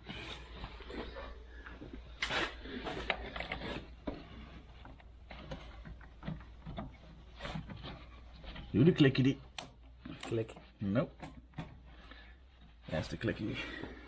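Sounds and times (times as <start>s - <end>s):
tools clicking and scraping: 2.2s - 8.7s, 9.4s - 12.0s
rustling scrape: 2.2s - 9.2s.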